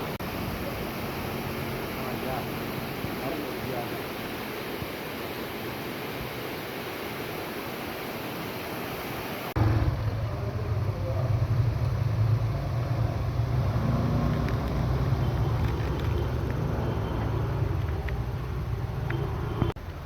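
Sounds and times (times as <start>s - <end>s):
waterfall rushing hiss: 0.0s - 9.9s.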